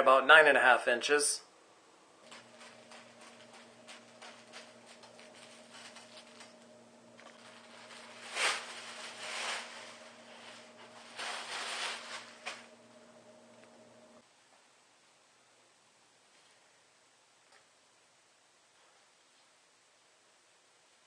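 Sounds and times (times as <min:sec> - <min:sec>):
faint steady hum: 0:00.0 - 0:21.0
rustling and scraping: 0:02.2 - 0:14.2.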